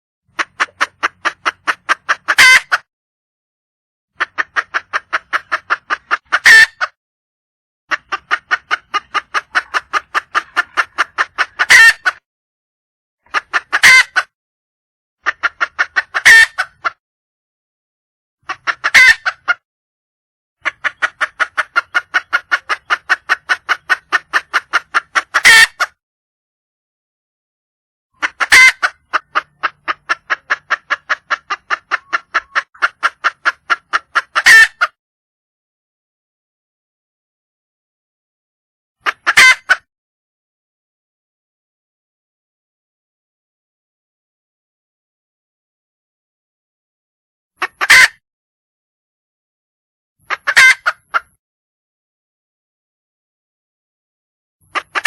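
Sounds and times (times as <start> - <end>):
hen clucking rapidly: 0.3 - 2.9, 4.2 - 7.0, 7.9 - 12.2, 13.2 - 14.3, 15.2 - 17.0, 18.4 - 19.6, 20.6 - 26.0, 28.2 - 35.0, 39.0 - 39.9, 47.6 - 48.2, 50.2 - 51.4, 54.6 - 55.0.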